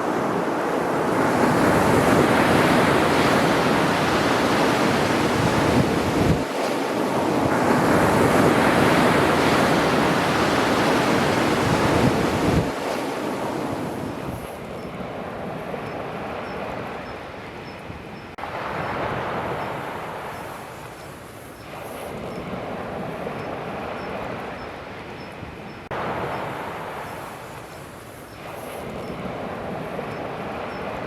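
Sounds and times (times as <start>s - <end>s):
wind buffeting microphone: 0.0s - 17.1s
sea waves breaking on shore: 0.0s - 17.6s, 18.4s - 31.0s.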